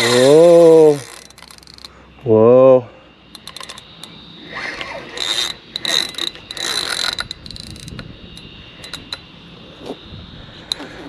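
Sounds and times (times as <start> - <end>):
fishing reel clicks: 0.0 - 2.0, 3.3 - 9.2
fishing reel drag buzzing: 0.0 - 2.3, 3.3 - 11.0.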